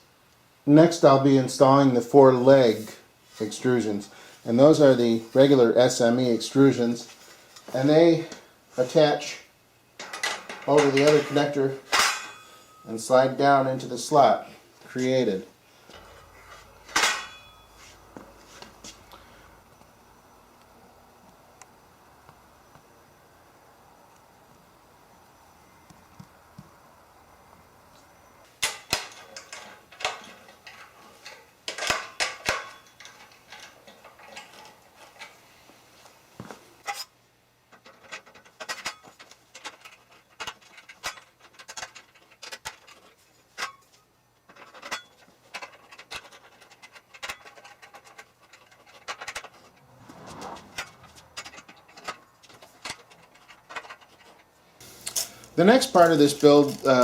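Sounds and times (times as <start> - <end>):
metal scraping slide: 45.7 - 54.5.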